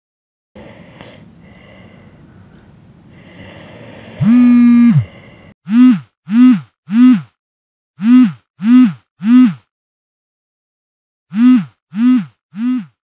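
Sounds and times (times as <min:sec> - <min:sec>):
buzzy comedy tone swooping: 0:04.2 - 0:05.1, 0:05.7 - 0:07.3, 0:08.0 - 0:09.6, 0:11.3 - 0:12.9.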